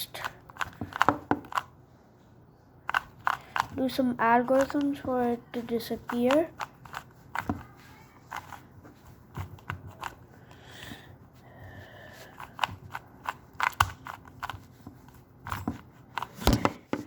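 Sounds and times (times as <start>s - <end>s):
puzzle cube clicking as twisted: 0.1s - 1.7s, 2.9s - 3.8s, 4.5s - 4.9s, 6.0s - 7.6s, 12.3s - 14.6s.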